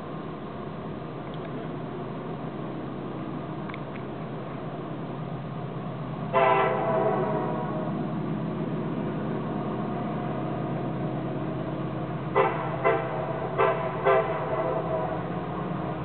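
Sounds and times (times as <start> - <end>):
locomotive engines rumbling: 0.0 - 16.0
locomotive air horn blasts: 6.3 - 8.0, 12.3 - 15.3.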